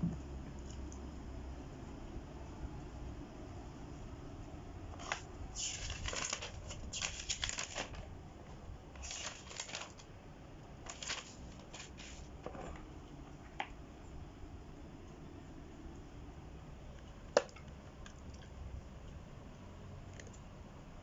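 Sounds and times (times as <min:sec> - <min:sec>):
rustling and clicking of handling: 0:04.9 - 0:10.1, 0:10.8 - 0:13.8.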